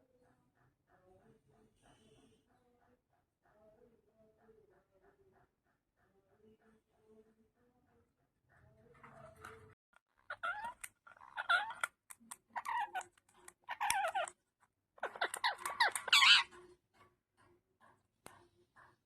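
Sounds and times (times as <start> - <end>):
parakeet chattering calls: 10.3 - 14.4, 15.0 - 16.5.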